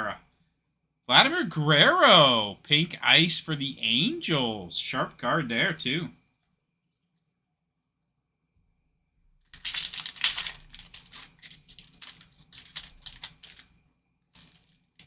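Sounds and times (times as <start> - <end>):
wrapper tearing and crinkling: 9.5 - 13.7, 14.3 - 15.0.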